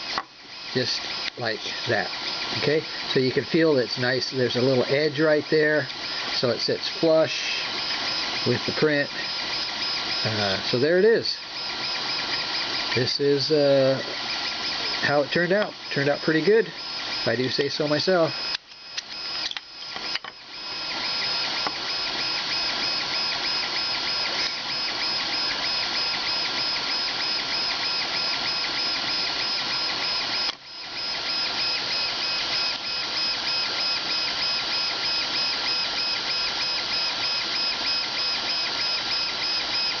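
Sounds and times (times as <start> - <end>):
printer mechanical whir: 0.0 - 40.0.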